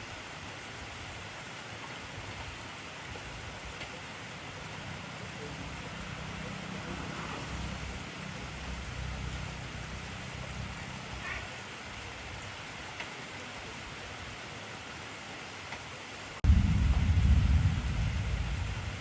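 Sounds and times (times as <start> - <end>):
heavy rain: 0.0 - 19.0
low rumble: 16.4 - 19.0.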